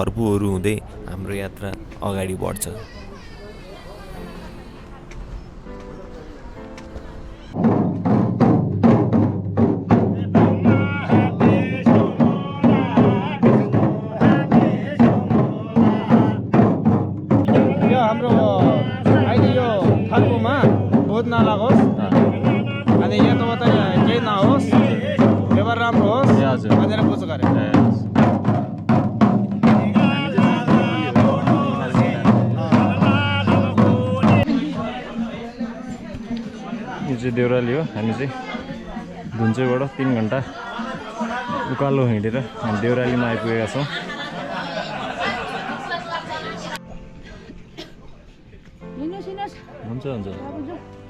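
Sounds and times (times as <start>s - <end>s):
percussive beat: 7.6s - 37.4s.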